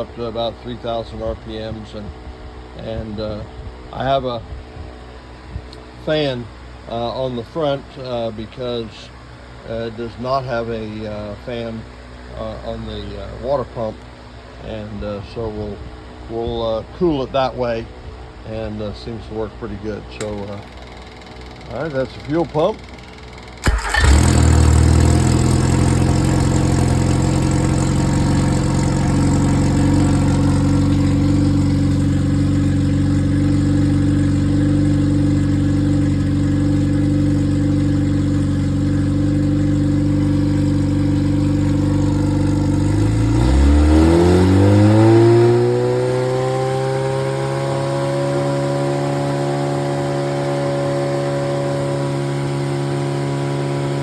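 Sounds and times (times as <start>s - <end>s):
car engine starting and idling: 18.6s - 54.0s.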